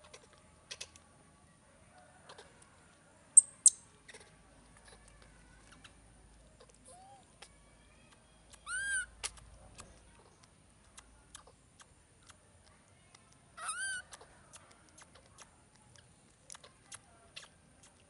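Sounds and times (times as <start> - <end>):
high-pitched chirps: 3.4 - 3.9
baby monkey squeaking: 3.4 - 6.0, 8.5 - 9.4, 13.6 - 14.3.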